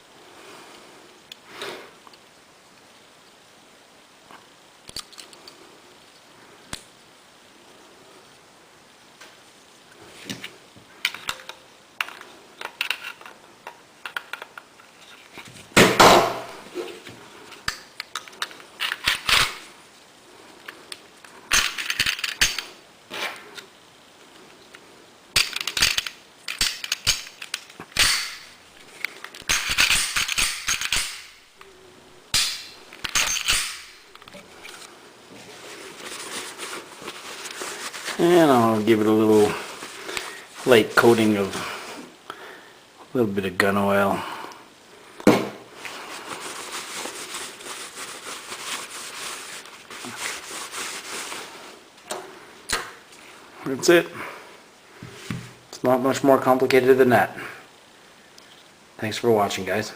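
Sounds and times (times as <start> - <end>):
metal parts scraping: 18.1 - 19.6, 21.5 - 23.4, 25.4 - 28.5, 29.3 - 31.5, 32.4 - 34.9.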